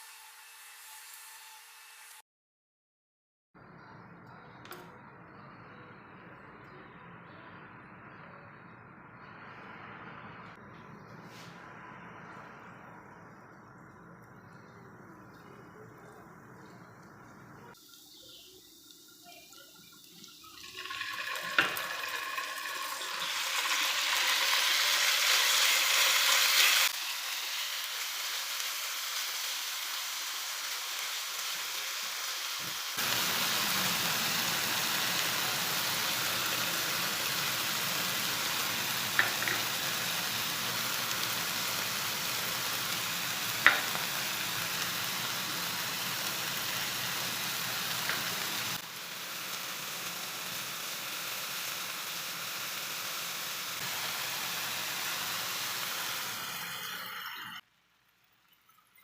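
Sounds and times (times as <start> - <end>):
food sizzling in hot oil: 0.0 - 2.2, 17.7 - 57.6.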